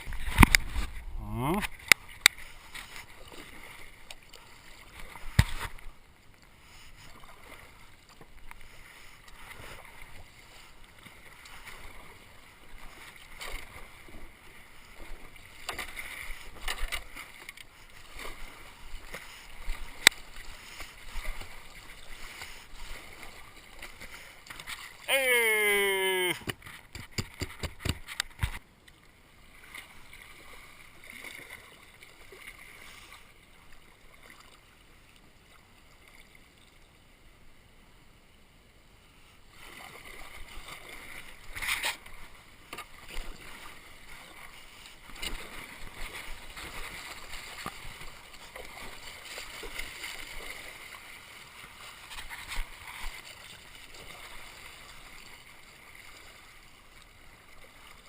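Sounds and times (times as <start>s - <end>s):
loud splashes: 25.1s - 26.4s
river water rushing: 25.1s - 26.4s.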